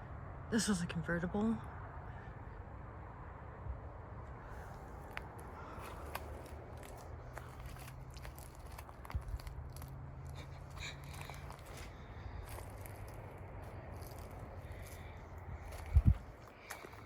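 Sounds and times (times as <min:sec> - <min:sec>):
low rumble: 0:01.7 - 0:17.0
footsteps crunching on rocky trail: 0:04.7 - 0:17.0.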